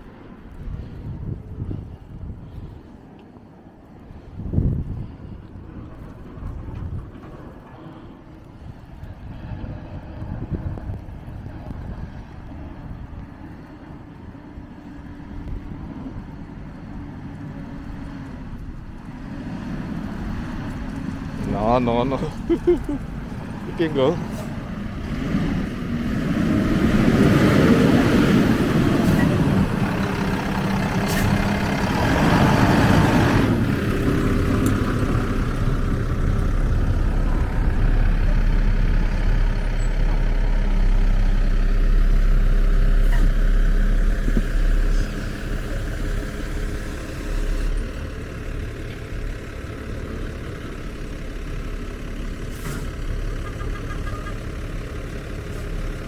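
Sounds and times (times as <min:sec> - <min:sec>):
vehicle driving through snow: 0:04.1 - 0:56.0
low rumble: 0:15.0 - 0:53.3.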